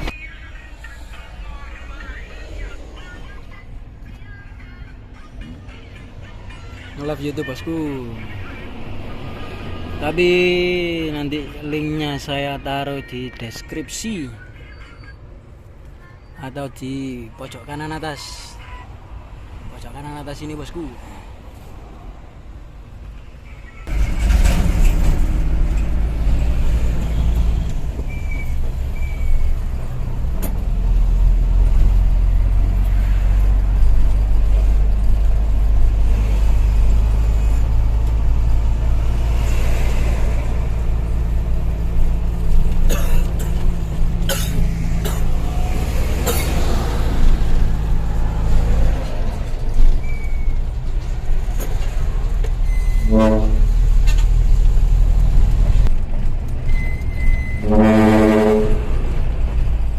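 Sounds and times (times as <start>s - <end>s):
truck diesel engine droning: 23.8s - 59.9s.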